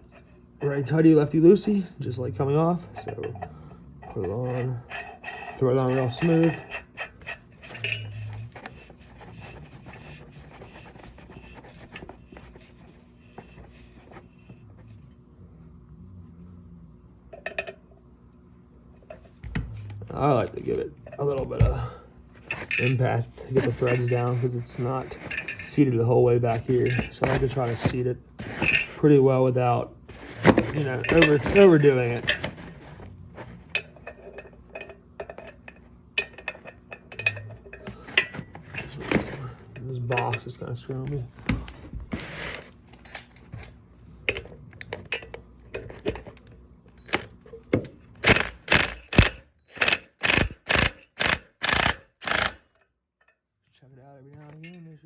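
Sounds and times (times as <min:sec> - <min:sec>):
metal bike parts clinking: 0:00.6 - 0:12.4, 0:21.1 - 0:29.1, 0:30.4 - 0:32.6, 0:33.7 - 0:41.2, 0:54.4 - 0:55.0
metal threads scraping and clicking: 0:02.8 - 0:14.0.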